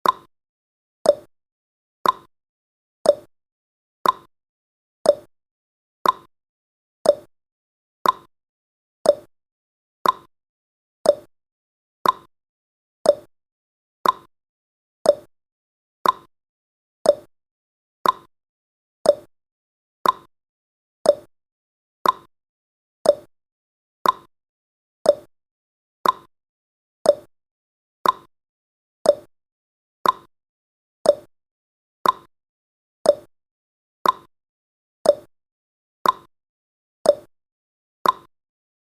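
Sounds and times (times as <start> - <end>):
countdown timer ticking: 3.1 - 3.3, 5.1 - 5.3, 7.1 - 7.3, 9.1 - 9.3, 10.0 - 10.3, 11.1 - 11.3, 13.1 - 13.3, 15.1 - 15.3, 17.1 - 17.3, 18.0 - 18.3, 19.1 - 19.3, 21.1 - 21.3, 23.0 - 23.3, 25.1 - 25.3, 26.0 - 26.3, 27.1 - 27.3, 28.0 - 28.3, 29.1 - 29.3, 30.0 - 30.3, 31.1 - 31.3, 32.0 - 32.3, 33.1 - 33.3, 34.0 - 34.3, 35.1 - 35.3, 36.0 - 36.3, 37.1 - 37.3, 38.0 - 38.3.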